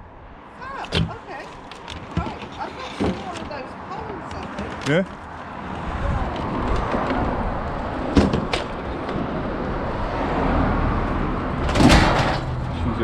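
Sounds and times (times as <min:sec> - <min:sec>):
loud metal clank: 0:11.6 - 0:12.6.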